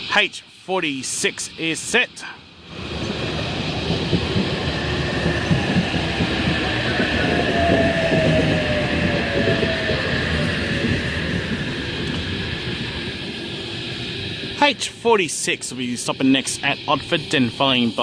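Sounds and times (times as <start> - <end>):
train motor whine: 1.0 - 14.9
train wheels rumbling on rails: 1.0 - 18.0.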